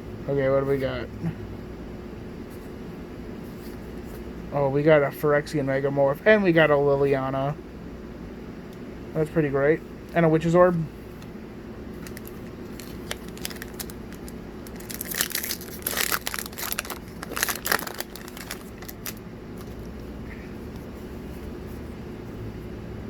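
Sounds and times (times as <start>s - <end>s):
steady background hum: 0.0s - 23.0s
plastic wrapper crinkling: 12.0s - 20.1s.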